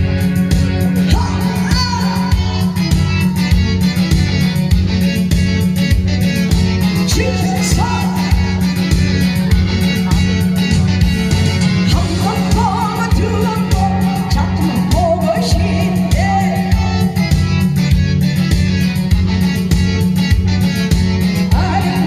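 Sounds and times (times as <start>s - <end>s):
backing track with drums and bass: 0.0s - 22.0s
person singing: 0.8s - 3.6s, 7.0s - 10.6s, 11.8s - 17.4s, 21.5s - 22.0s.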